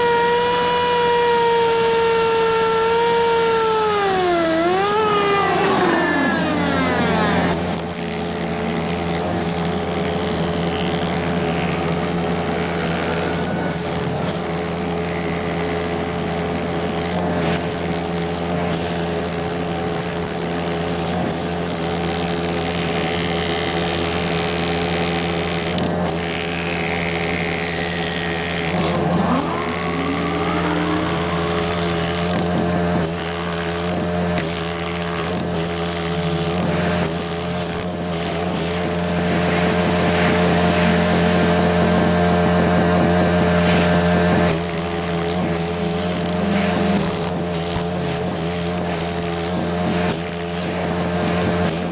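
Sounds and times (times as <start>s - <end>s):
construction machinery engine running: 0.0s - 17.4s, 26.8s - 38.2s
rising whine: 0.2s - 7.7s, 28.6s - 32.4s.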